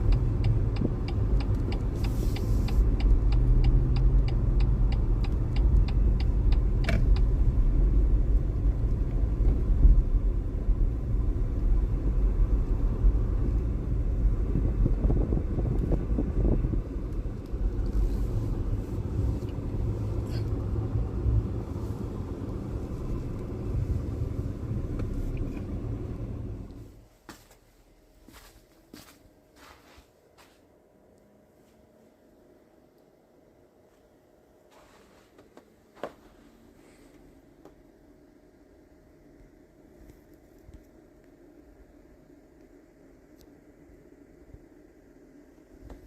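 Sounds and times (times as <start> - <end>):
car engine rumble: 0.0 - 29.8
road noise: 0.0 - 30.6.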